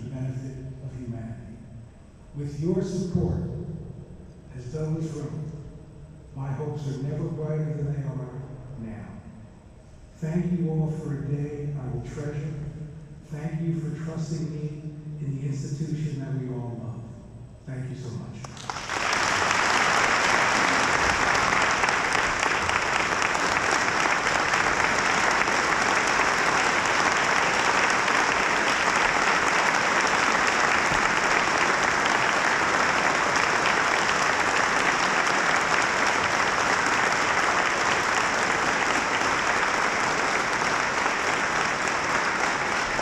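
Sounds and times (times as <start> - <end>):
audience applauding: 18.4 - 43.0.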